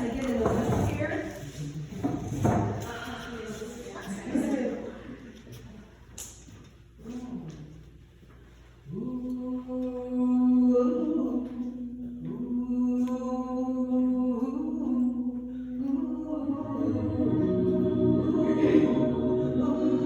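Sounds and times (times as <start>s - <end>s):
voices singing a capella: 8.8s - 20.0s.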